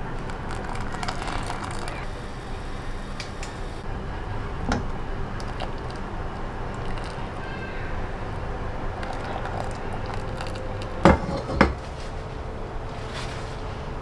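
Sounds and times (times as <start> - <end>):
steady low hum: 0.0 - 14.0
kitchen utensils clicking and tapping: 8.3 - 12.0.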